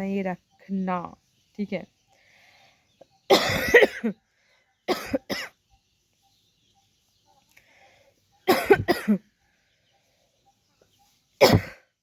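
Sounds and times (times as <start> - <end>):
woman coughing: 3.3 - 4.2, 4.9 - 5.6, 8.5 - 9.2, 11.4 - 11.9.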